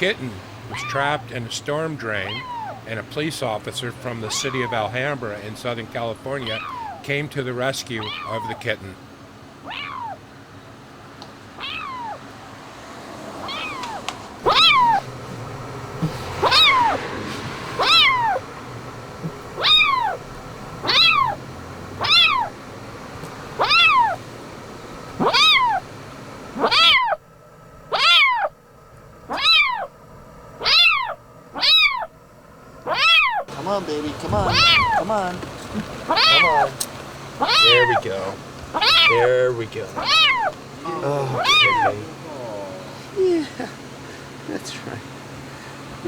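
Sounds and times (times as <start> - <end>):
kitten meowing in distress: 0.7 - 1.2, 2.2 - 2.8, 4.2 - 4.9, 6.4 - 7.0, 8.0 - 8.6, 9.6 - 10.2, 11.6 - 12.2, 13.4 - 15.1, 16.4 - 17.0, 17.8 - 18.4, 19.6 - 20.2, 20.8 - 21.4, 22.0 - 22.5, 23.6 - 24.2, 25.2 - 25.8, 26.6 - 27.2, 27.9 - 28.5, 29.3 - 29.9, 30.6 - 32.1, 32.9 - 33.5, 34.3 - 35.0, 36.1 - 36.8, 37.4 - 38.0, 38.8 - 39.3, 40.0 - 42.8.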